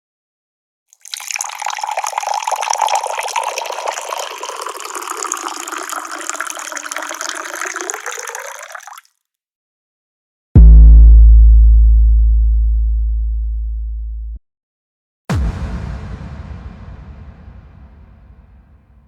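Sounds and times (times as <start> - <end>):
water rushing: 1.0 - 8.8.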